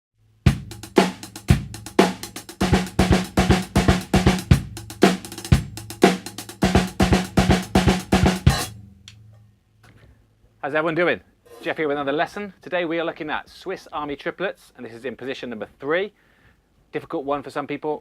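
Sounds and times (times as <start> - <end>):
bass drum kicks: 0.5 - 1.9
snare drum strokes: 0.5 - 8.8.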